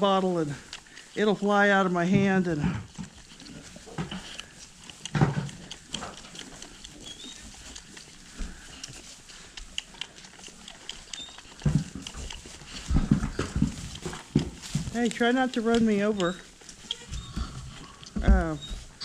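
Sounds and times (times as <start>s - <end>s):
goat kid sucking and snuffling: 0.4s - 1.3s, 1.9s - 19.0s
heavy thumps: 11.6s - 16.1s.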